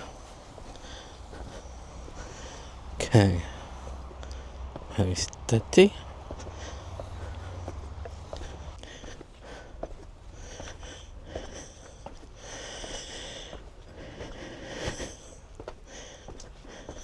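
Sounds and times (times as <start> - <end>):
hissy breathing: 0.0 - 17.0.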